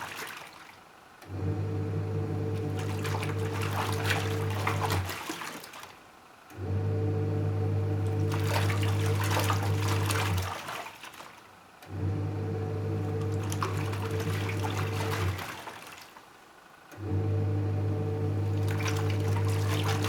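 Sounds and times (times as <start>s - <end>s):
water churning and sloshing: 0.0s - 1.1s, 2.6s - 6.2s, 8.0s - 11.7s, 13.0s - 16.6s, 18.4s - 20.0s
washing machine motor hum: 1.2s - 5.8s, 6.4s - 11.2s, 11.8s - 16.0s, 16.9s - 20.0s.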